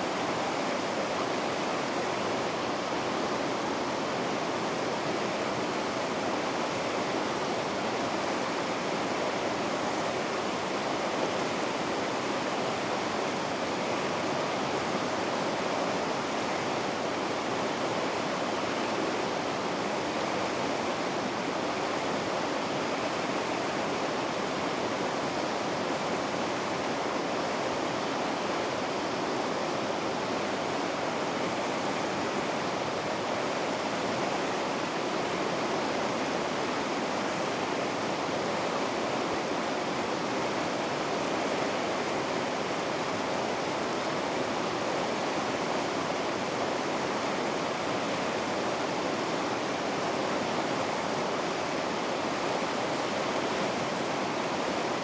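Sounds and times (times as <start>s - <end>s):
river rapids rushing: 0.0s - 55.0s.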